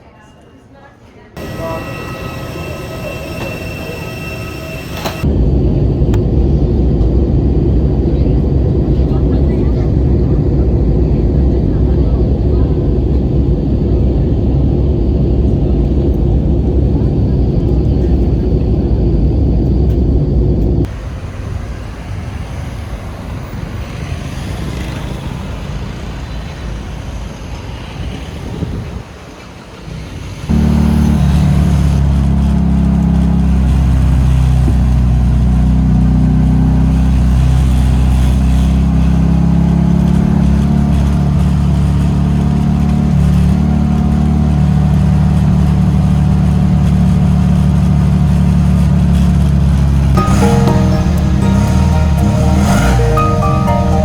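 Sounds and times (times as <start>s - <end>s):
two-cylinder engine running: 1.4s - 5.3s, 30.3s - 54.0s.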